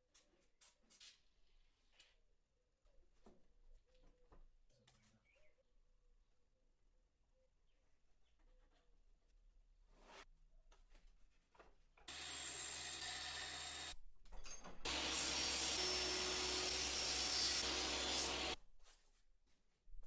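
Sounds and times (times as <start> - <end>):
electric power tool running: 12.1 - 14.0, 14.9 - 18.6.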